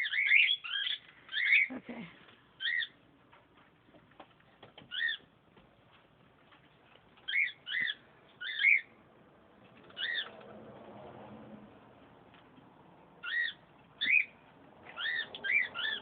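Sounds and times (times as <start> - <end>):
lovebird chirping: 0.0 - 3.0, 7.3 - 9.0, 13.2 - 16.0.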